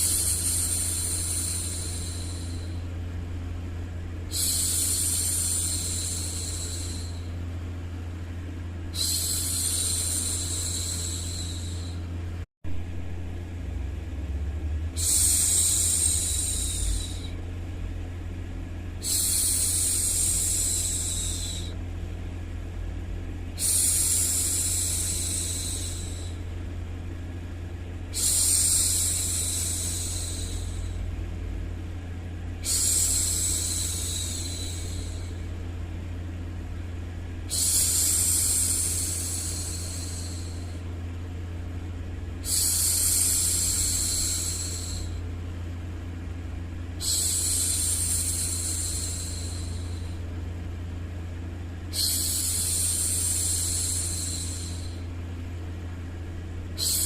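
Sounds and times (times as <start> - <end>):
low rumbling noise: 0.0 - 57.0
woman shushing: 51.9 - 55.0, 56.8 - 57.0.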